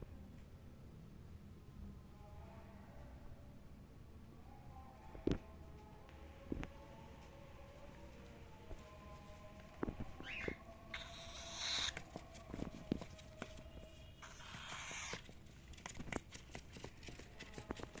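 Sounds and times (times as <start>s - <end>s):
cockatiel harsh hissing calls: 10.2s - 12.0s, 14.2s - 15.3s
cockatiel chirping: 10.2s - 12.1s, 14.2s - 15.3s.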